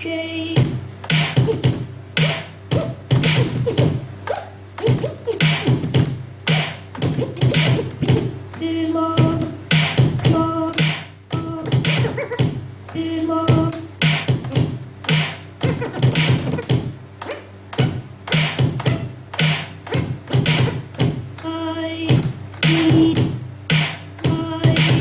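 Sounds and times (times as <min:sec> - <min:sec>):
intro music with heavy beat: 0:00.6 - 0:04.2, 0:04.8 - 0:08.5, 0:09.2 - 0:12.8, 0:13.5 - 0:17.0, 0:17.8 - 0:21.4, 0:22.1 - 0:25.0
busy percussion: 0:00.6 - 0:08.6, 0:09.2 - 0:21.5, 0:22.1 - 0:25.0
short repeated pitched notes: 0:01.0 - 0:08.3, 0:09.2 - 0:21.1.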